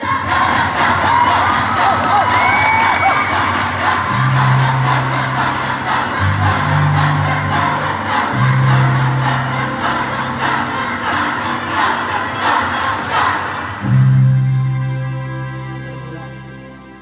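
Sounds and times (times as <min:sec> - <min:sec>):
choir singing loudly: 0:00.0 - 0:15.3
low held bass notes: 0:04.1 - 0:13.1, 0:13.8 - 0:17.0.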